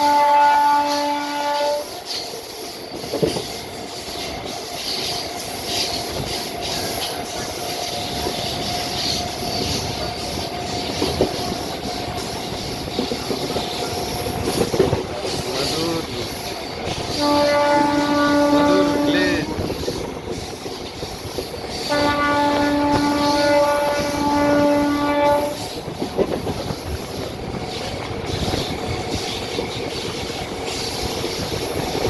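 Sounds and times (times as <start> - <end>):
train horn: 0.0 - 2.0, 17.0 - 19.7, 21.7 - 25.8
train wheels on rails: 0.0 - 32.0.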